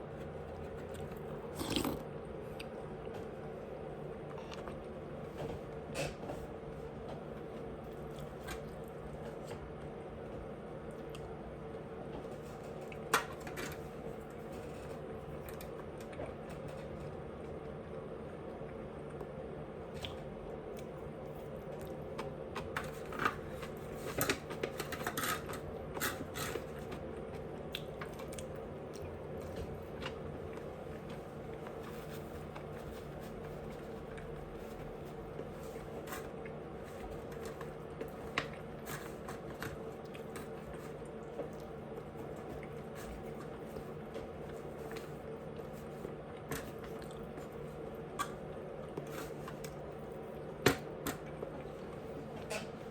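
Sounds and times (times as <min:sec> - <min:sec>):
steady background hum: 0:00.0 - 0:52.9
person chewing with mouth clicks: 0:00.9 - 0:02.8.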